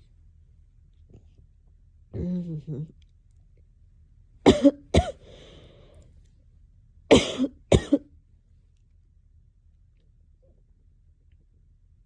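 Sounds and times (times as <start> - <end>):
woman coughing: 4.5 - 5.2, 7.1 - 8.1.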